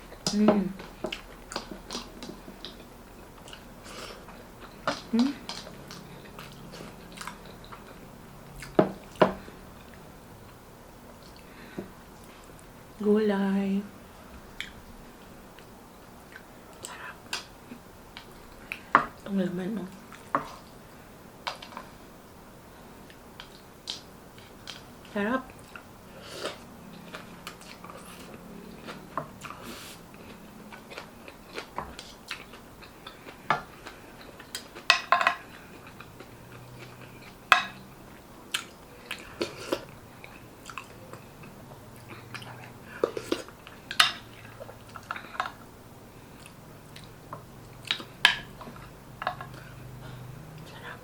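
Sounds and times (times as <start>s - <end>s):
person chewing food: 0.0s - 12.7s, 14.5s - 19.3s, 19.9s - 20.8s, 23.0s - 51.0s.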